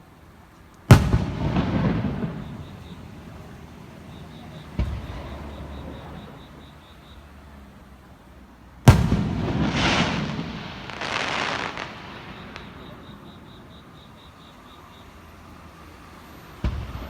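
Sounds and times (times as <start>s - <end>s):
firework crackling: 0.8s - 6.9s, 8.9s - 17.0s
firework shell bang: 4.3s - 6.4s, 8.9s - 13.2s.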